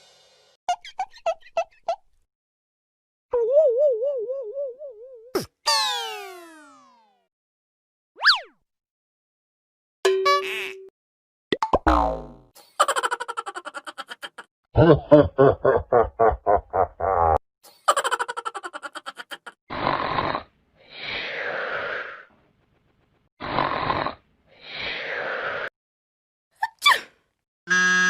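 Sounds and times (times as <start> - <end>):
long hissy noises: 0.0 - 0.4.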